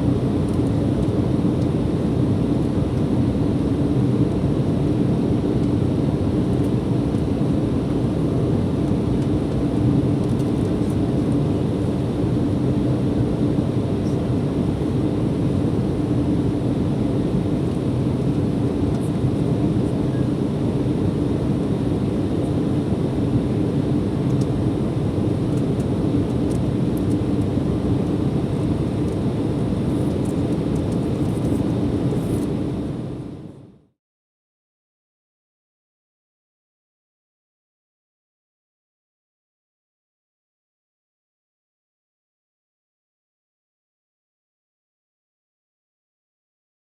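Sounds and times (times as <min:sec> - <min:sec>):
jet engines droning: 0:00.0 - 0:33.9.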